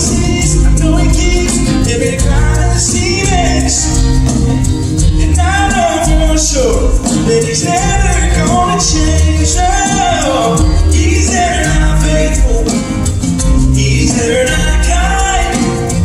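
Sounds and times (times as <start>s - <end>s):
person singing: 0.0s - 4.4s, 5.0s - 13.0s, 13.6s - 16.0s
live band playing: 0.0s - 16.0s.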